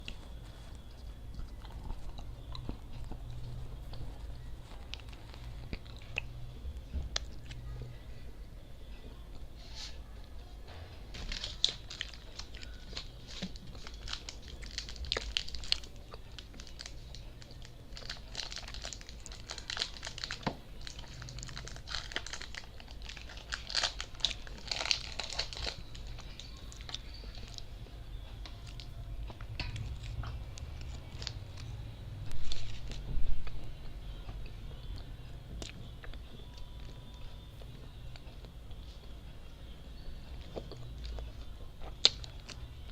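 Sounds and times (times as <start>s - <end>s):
wrappers crinkling and tearing: 11.2s - 27.6s.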